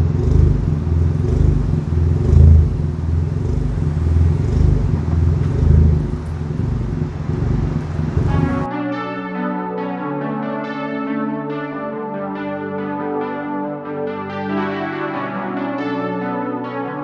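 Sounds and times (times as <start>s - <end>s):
car engine running: 0.0s - 8.7s.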